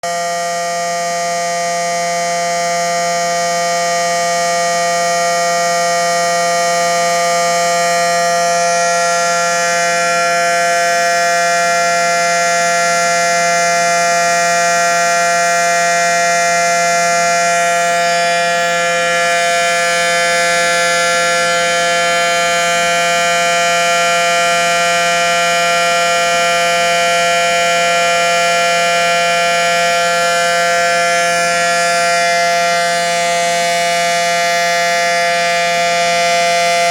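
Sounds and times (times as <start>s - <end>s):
warning siren two-note tone: 0.0s - 36.9s.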